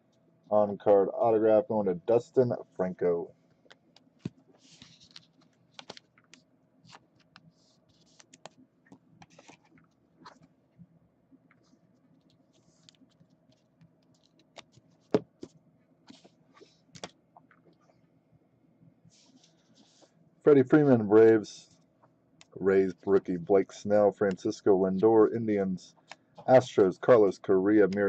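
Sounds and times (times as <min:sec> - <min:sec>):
faint steady hum: 0:00.0 - 0:28.0
cards and plastic sleeves handled: 0:03.7 - 0:10.5, 0:12.2 - 0:17.2.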